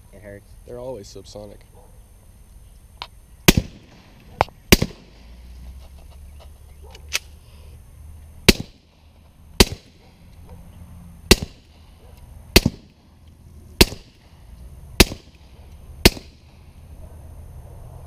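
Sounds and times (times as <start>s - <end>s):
suppressed pistol shots: 3.4s - 5.5s, 8.4s - 10.2s, 11.3s - 13.1s, 13.8s - 14.4s, 15.0s - 16.6s.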